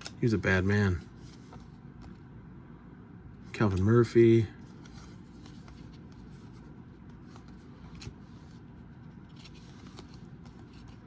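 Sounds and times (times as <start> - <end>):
low background hum: 0.0 - 11.0
trading cards clicking and scraping: 4.7 - 11.0.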